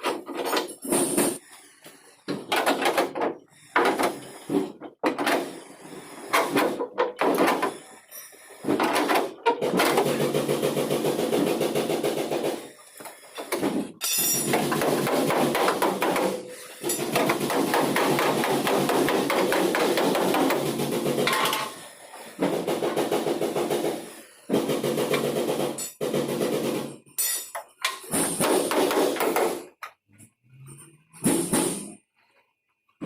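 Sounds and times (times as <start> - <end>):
hammering on vehicle bodywork: 14.4 - 21.4, 28.2 - 29.8.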